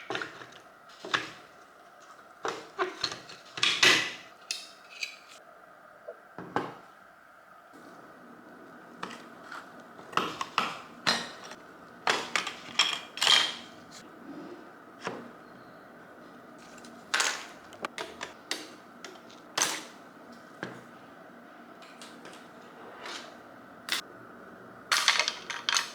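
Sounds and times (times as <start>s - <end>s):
faint hum: 0.0s - 25.9s
metal tools clicking and knocking: 24.9s - 25.9s.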